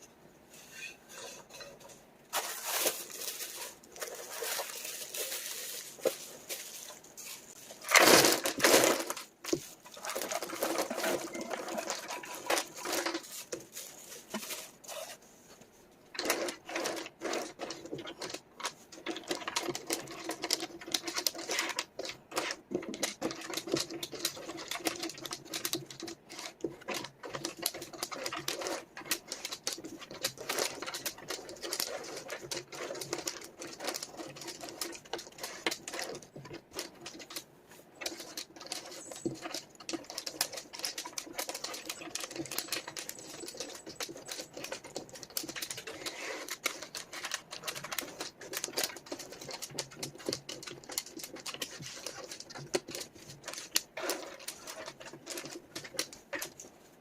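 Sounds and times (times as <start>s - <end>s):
wooden puzzle pieces rattling: 2.4s - 14.6s, 16.2s - 56.7s.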